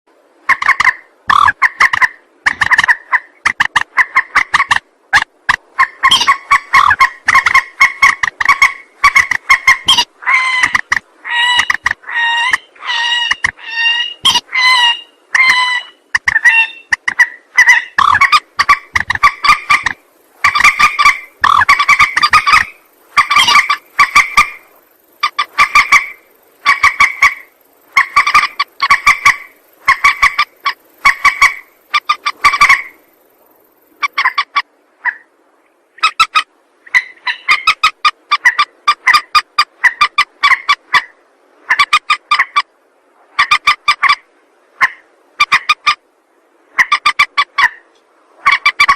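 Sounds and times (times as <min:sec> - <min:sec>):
rail bird calls: 0:00.4 - 0:42.7.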